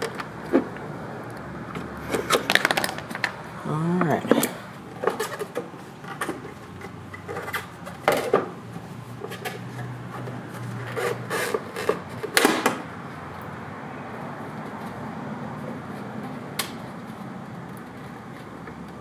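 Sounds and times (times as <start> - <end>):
plastic clicks and scraping: 0.0 - 3.4, 4.3 - 8.5, 9.2 - 12.8.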